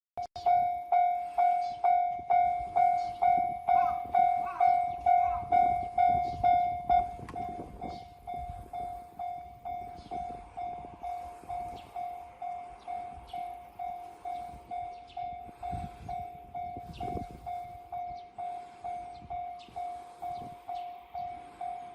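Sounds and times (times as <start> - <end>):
railroad crossing bell clanging: 0.3 - 21.9.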